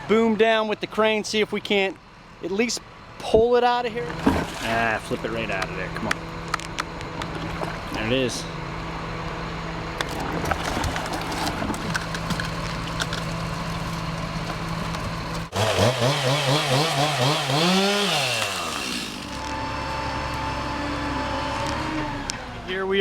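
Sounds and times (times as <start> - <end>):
chainsaw engine revving: 14.9 - 22.4.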